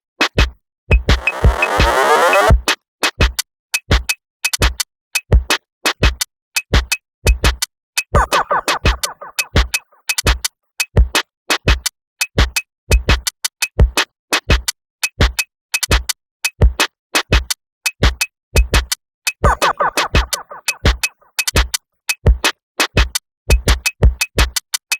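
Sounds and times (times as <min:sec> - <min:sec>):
drum-machine beat: 0:01.1 - 0:02.6
synthesizer phrase: 0:01.2 - 0:02.6.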